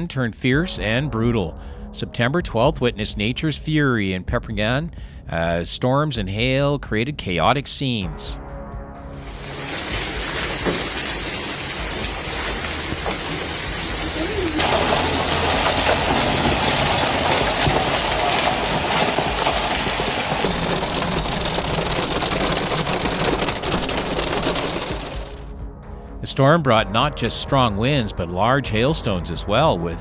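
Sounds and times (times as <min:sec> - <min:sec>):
heavy rain pouring: 0:09.1 - 0:25.4.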